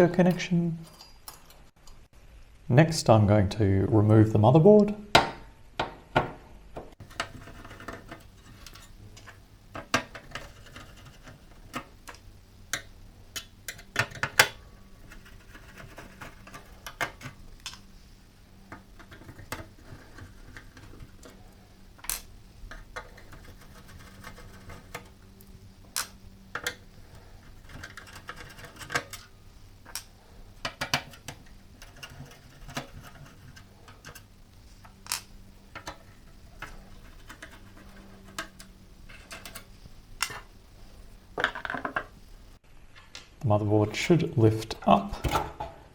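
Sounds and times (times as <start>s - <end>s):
faint steady hum: 0.0s - 45.9s
tools tapping metal chassis: 26.0s - 40.5s.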